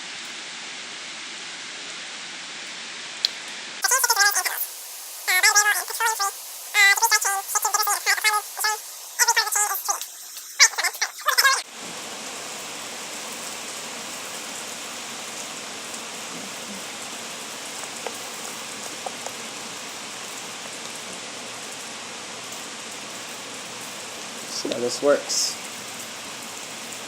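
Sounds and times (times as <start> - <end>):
steady hiss like running water: 0.0 - 27.0
wavering voice-like sound: 3.8 - 11.7, 16.3 - 17.0.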